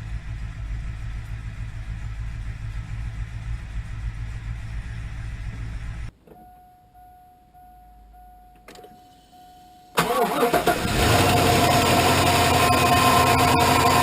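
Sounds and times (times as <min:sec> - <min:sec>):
engine running: 0:00.0 - 0:06.1, 0:10.0 - 0:14.0
electronic chime tone: 0:06.4 - 0:10.0
engine cranking and starting: 0:10.0 - 0:14.0
engine idling loudly: 0:10.8 - 0:14.0.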